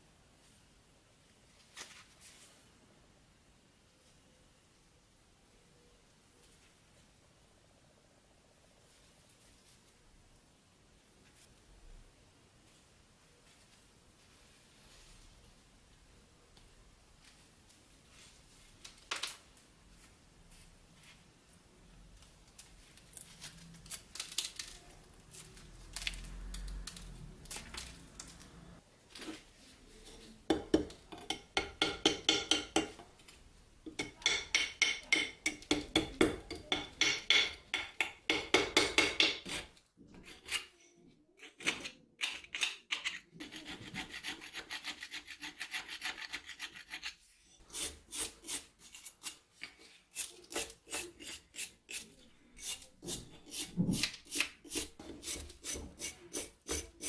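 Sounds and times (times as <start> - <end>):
file scraping rusted steel: 34.0 - 57.0.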